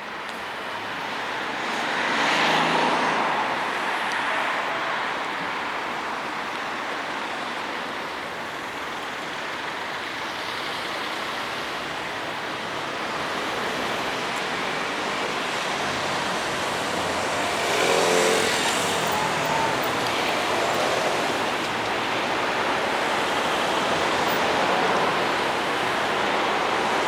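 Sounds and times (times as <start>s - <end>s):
car driving past: 13.6s - 27.0s.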